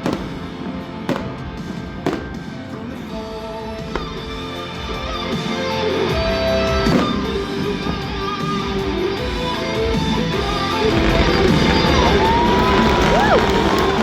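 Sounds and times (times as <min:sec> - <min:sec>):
sharp crack: 0:00.0 - 0:03.1, 0:06.8 - 0:08.9.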